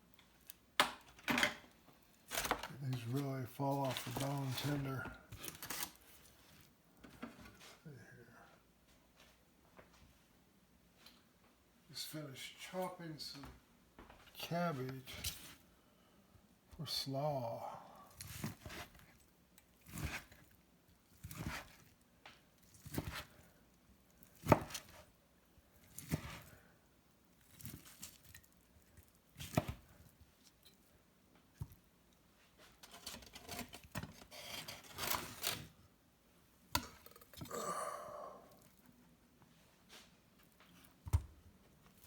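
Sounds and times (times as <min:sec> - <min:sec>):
knife chopping on cutting board: 0:24.4 - 0:25.0.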